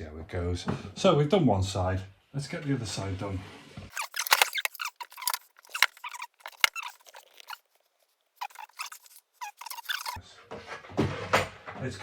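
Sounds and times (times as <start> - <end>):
boards scraping: 3.9 - 10.2.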